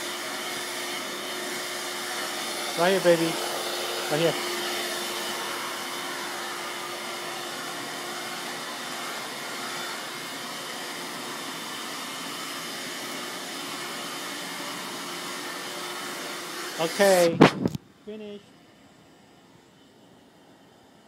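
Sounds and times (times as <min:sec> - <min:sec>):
vacuum cleaner running: 0:00.0 - 0:17.8.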